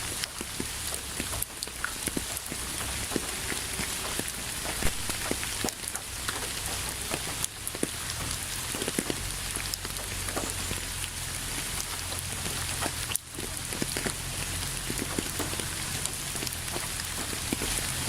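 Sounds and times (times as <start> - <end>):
low steady rumble: 0.0 - 18.0
rain hissing: 0.0 - 18.0
raindrops ticking on hard surface: 0.0 - 18.0.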